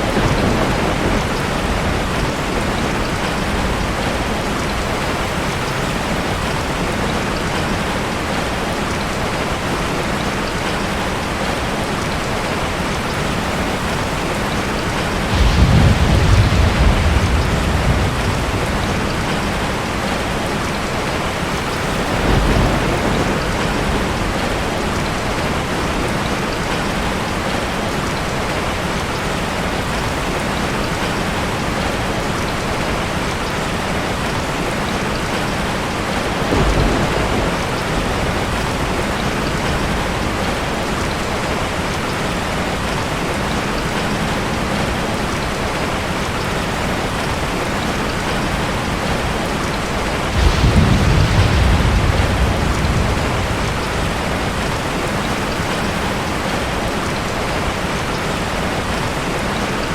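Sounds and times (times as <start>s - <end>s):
thunder rumbling: 0.0s - 7.7s, 12.9s - 27.6s, 35.6s - 41.9s, 48.5s - 57.5s
steady rain falling: 0.0s - 59.9s.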